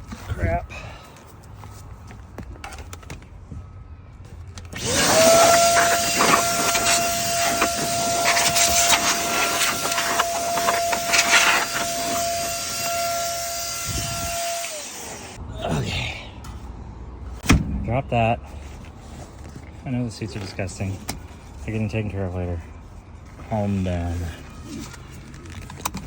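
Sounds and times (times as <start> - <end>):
vacuum cleaner motor whine: 4.8 - 15.4.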